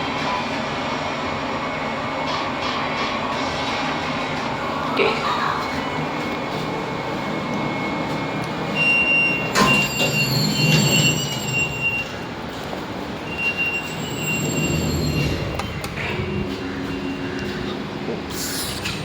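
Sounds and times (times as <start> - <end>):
lift machine hum: 4.6 - 18.9
lift doors sliding: 6.5 - 19.0.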